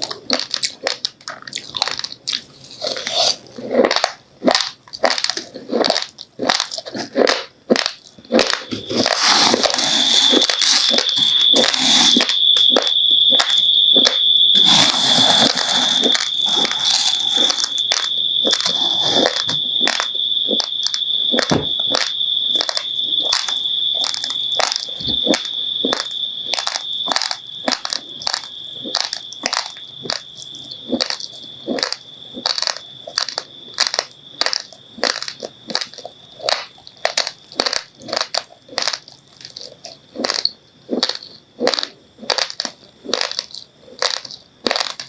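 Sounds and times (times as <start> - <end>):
chewing raw rice crunches: 0.0 - 45.0
high-pitched whistle-like tone: 8.5 - 31.3.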